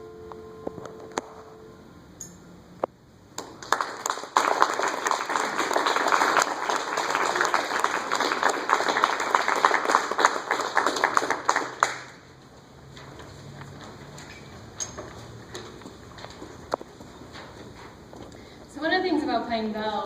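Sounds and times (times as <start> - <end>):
audience applauding: 3.4 - 12.4.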